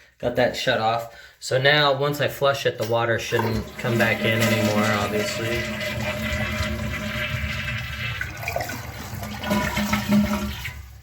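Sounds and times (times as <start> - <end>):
toilet flushing: 3.3 - 11.0.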